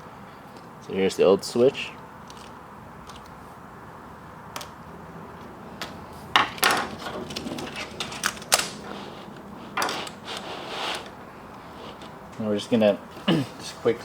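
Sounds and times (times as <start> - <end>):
small parts clattering on workbench: 5.8 - 9.0.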